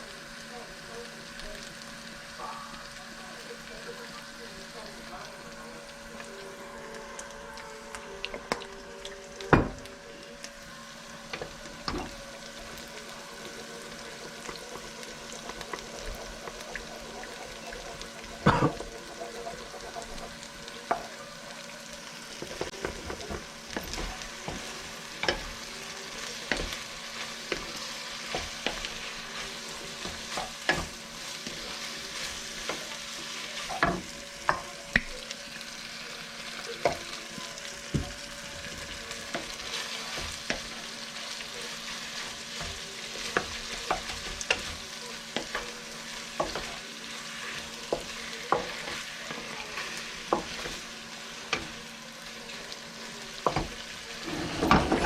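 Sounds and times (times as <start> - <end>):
food sizzling in frying pan: 0.0 - 55.0
spatula scraping pan: 13.3 - 21.1, 53.4 - 55.0.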